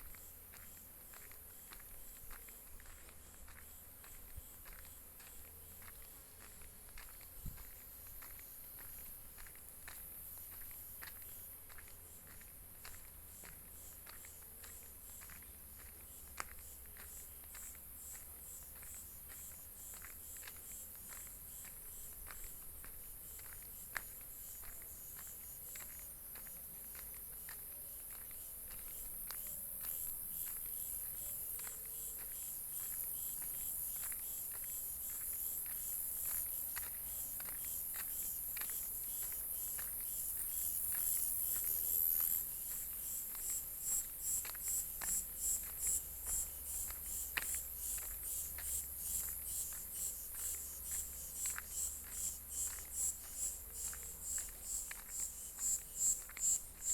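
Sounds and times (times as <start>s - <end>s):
insects chirring: 13.3s - 56.9s.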